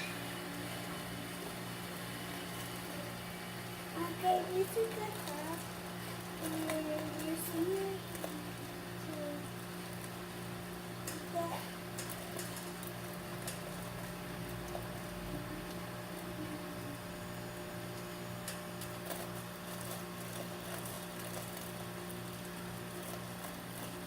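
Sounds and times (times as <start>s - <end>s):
pulsing mechanical hum: 0.0s - 24.0s.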